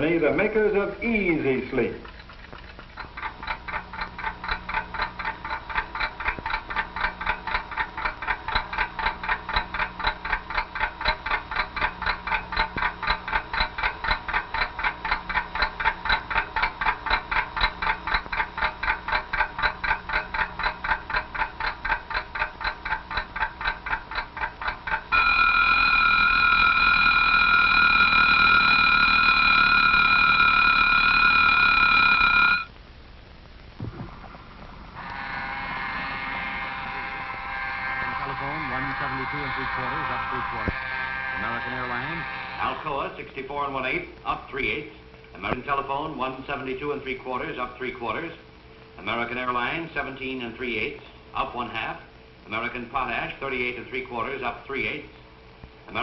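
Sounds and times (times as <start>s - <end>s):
alarm clock ticking: 0.0s - 32.7s, 36.6s - 43.2s
alarm clock ringing: 3.0s - 32.7s, 35.0s - 43.0s.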